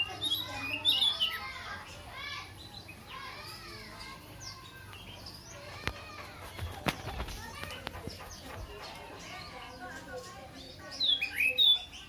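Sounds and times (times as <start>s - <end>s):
bird singing chirps and whistles: 0.0s - 3.3s, 9.4s - 12.0s
children's voices: 0.0s - 12.0s.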